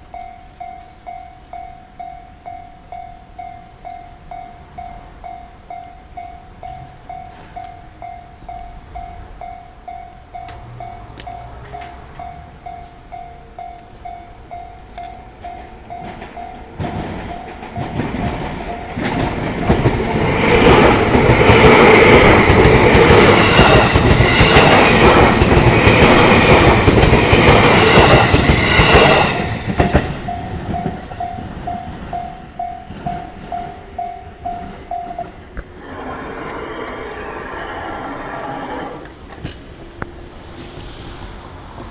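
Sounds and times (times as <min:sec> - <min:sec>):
level crossing warning bell: 0:00.0 - 0:25.5, 0:27.8 - 0:35.5
train wheels clattering over rails: 0:14.9 - 0:37.8.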